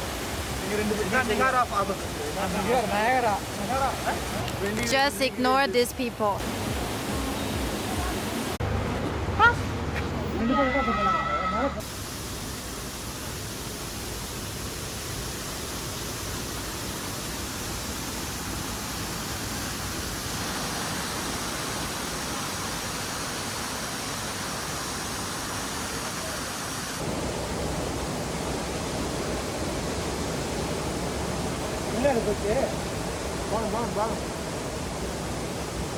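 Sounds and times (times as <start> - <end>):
waterfall rushing: 0.0 - 9.8, 10.4 - 35.9.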